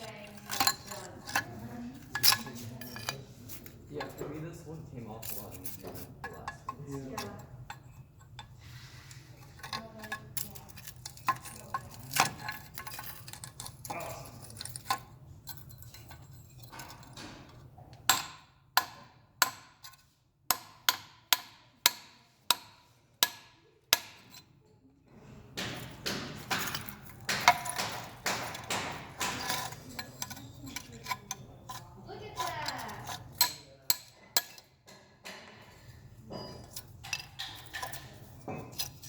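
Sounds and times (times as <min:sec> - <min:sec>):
hammer striking metal mold: 0:18.1 - 0:24.4, 0:25.6 - 0:30.4.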